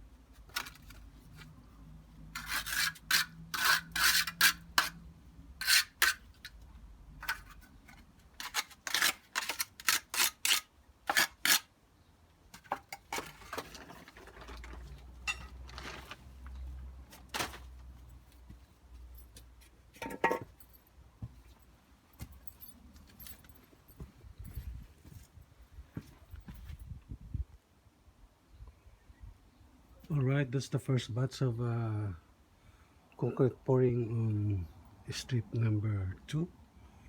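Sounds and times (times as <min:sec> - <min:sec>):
tools scraping fresh concrete: 0:02.4 - 0:05.0, 0:05.6 - 0:06.6, 0:07.2 - 0:11.7, 0:12.6 - 0:16.1.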